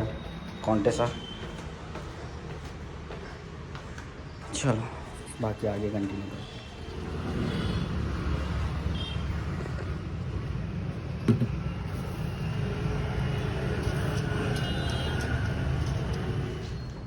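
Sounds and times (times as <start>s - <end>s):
vehicle rumbling: 6.8s - 17.0s.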